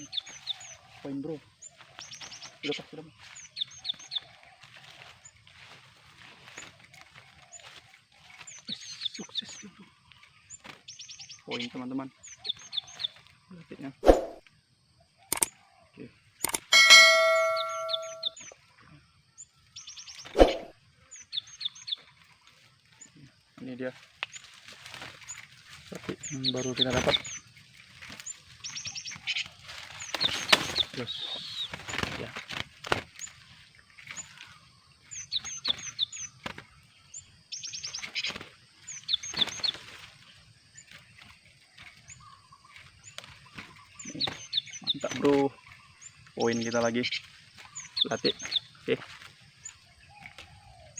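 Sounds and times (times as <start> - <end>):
short clicks: 15.3 - 15.5, 16.4 - 18.3
high bird chirps: 16.4 - 18.6, 19.4 - 22.2, 26.0 - 32.2, 33.1 - 48.9
metallic clang ringing: 16.7 - 18.3.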